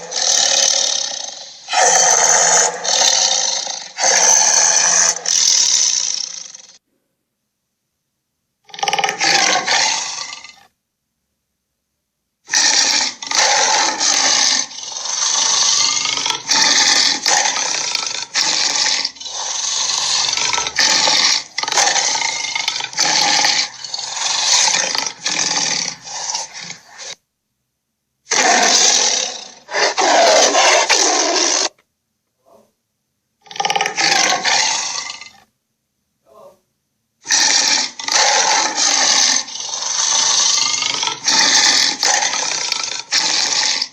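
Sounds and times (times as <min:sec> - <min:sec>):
growling dinosaur roars: 0:00.0 - 0:06.8, 0:08.7 - 0:10.7, 0:12.5 - 0:27.2, 0:28.3 - 0:31.8, 0:33.4 - 0:35.4, 0:37.3 - 0:43.9.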